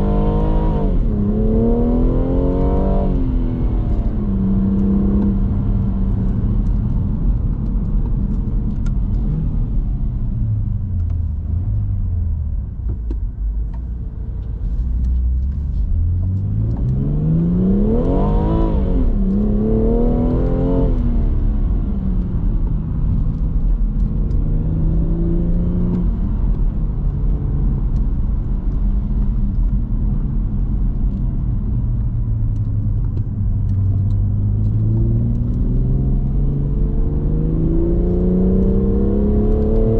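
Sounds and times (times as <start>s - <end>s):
car engine revving: 0.0s - 9.9s, 14.6s - 28.1s, 32.7s - 39.9s.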